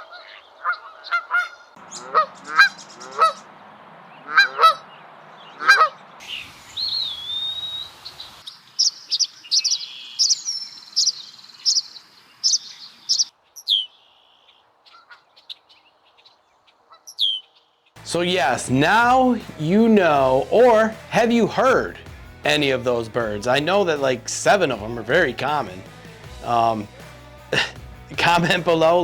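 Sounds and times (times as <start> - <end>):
goose honking: 0.0 - 3.5, 4.2 - 4.9, 5.5 - 6.0
songbird whistling and chirping: 6.2 - 14.4.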